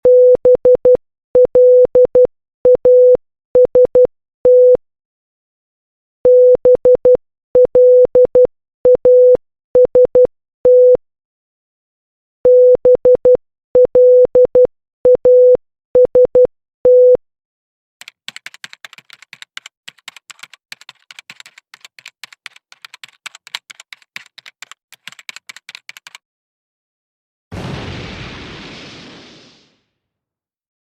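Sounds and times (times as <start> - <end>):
morse code beeps: 0.0 - 4.8, 12.5 - 17.2
rapid typing clicks: 18.0 - 26.2.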